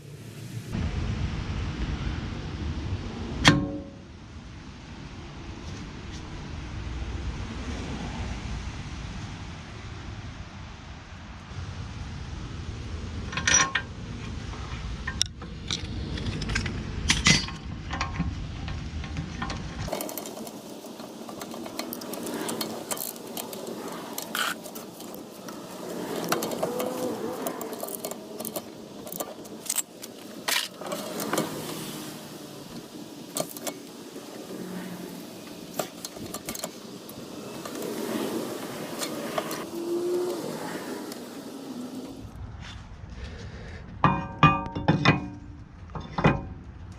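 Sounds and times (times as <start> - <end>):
metal tools clinking: 15.1 - 31.9.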